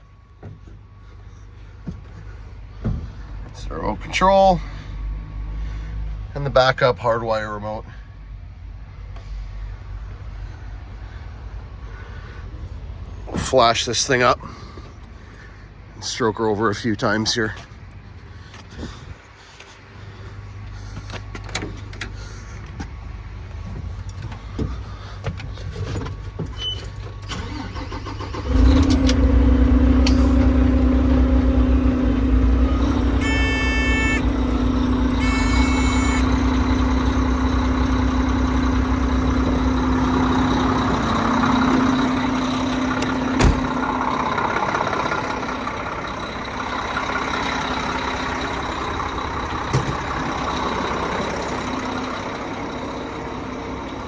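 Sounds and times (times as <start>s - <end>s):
diesel engine idling: 0.0s - 54.0s
hydraulic pump hum: 20.6s - 54.0s
electronic beeps: 33.2s - 36.9s.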